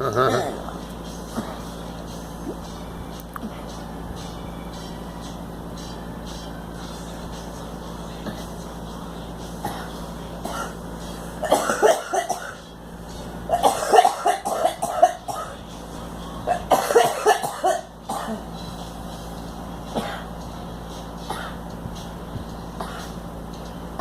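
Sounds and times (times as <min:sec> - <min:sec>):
girl coughing: 0:09.6 - 0:10.8, 0:11.4 - 0:12.6, 0:13.5 - 0:15.6, 0:16.5 - 0:18.5, 0:19.9 - 0:20.3, 0:21.3 - 0:21.6, 0:22.8 - 0:23.1.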